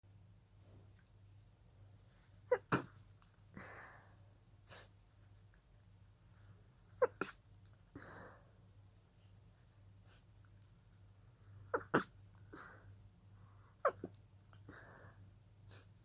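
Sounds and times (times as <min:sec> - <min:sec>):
person breathing: 0:03.5 - 0:04.9, 0:14.7 - 0:15.9.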